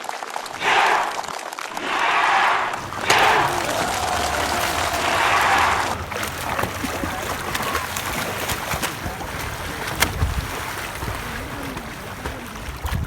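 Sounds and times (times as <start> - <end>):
small splashes or knocks: 2.8 - 13.0
water lapping at shore: 2.8 - 13.0
wind on microphone: 10.0 - 11.4, 12.6 - 13.0.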